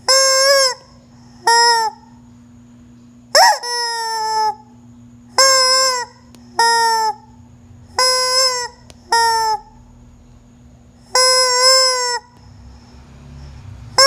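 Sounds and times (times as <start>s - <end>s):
chicken calling: 3.3s - 4.7s, 5.4s - 9.9s, 11.1s - 12.4s.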